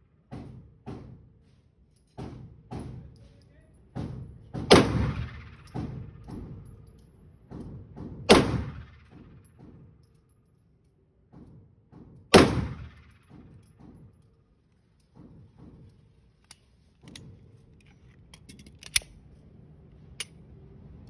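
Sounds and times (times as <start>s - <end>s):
pistol shot: 4.7s - 5.8s, 8.3s - 9.0s, 12.3s - 13.2s
sharp clicks and rattles: 15.8s - 19.2s.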